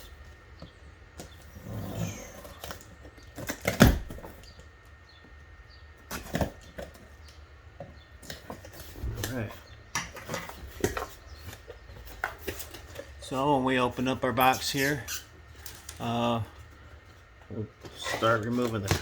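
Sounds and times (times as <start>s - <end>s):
cardboard box rustling: 8.2s - 16.0s.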